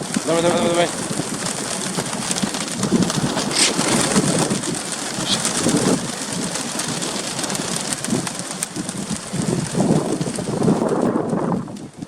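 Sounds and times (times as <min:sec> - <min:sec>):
gusty wind buffeting microphone: 0:00.0 - 0:12.0
sharp rustle: 0:02.0 - 0:06.1.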